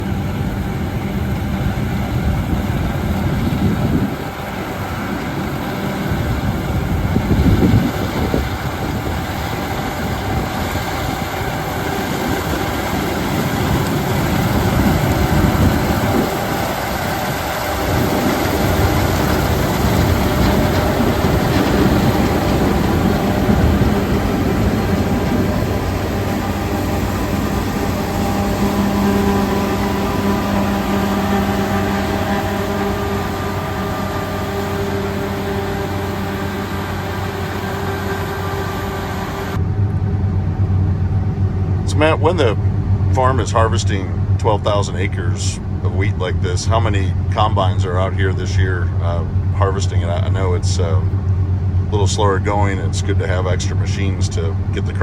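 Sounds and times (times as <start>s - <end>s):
combine harvester running: 0.0s - 55.0s.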